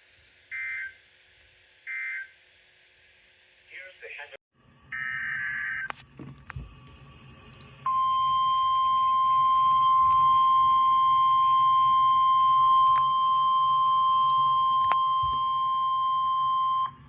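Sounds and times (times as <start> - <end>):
steady warning alarm tone: 7.5 - 17.0
clicks: 14.2 - 15.5.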